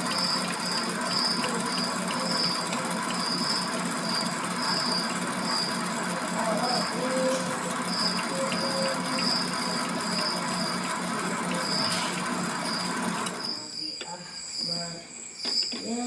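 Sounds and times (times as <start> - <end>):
lathe humming and whining: 0.0 - 13.8.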